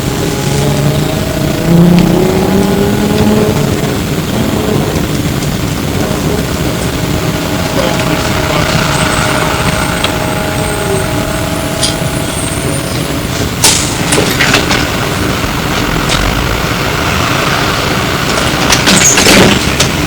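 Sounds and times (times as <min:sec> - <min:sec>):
faint steady tone: 0:00.0 - 0:04.4, 0:05.3 - 0:15.3
trolleybus running rumble: 0:00.0 - 0:20.0
sharp clatters: 0:13.4 - 0:20.0.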